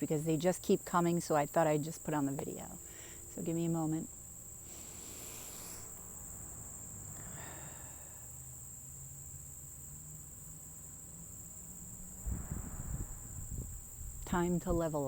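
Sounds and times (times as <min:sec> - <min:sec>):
crickets chirping: 0:00.0 - 0:15.0
low rumble: 0:12.1 - 0:14.8
low thumps: 0:12.2 - 0:14.8.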